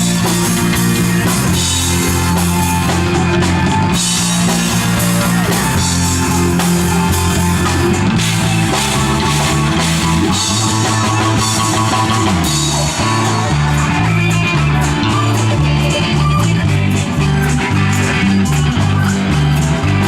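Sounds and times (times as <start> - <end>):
bass guitar stepping notes: 0.0 - 20.0
rock band playing: 0.0 - 20.0.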